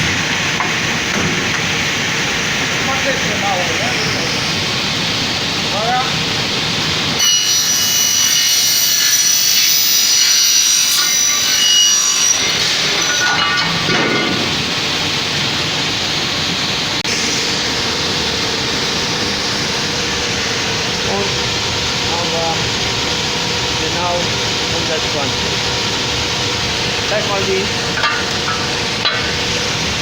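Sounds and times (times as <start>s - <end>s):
saw running hum: 0.0s - 30.0s
saw blades screeching through metal: 3.3s - 6.2s, 7.2s - 15.1s.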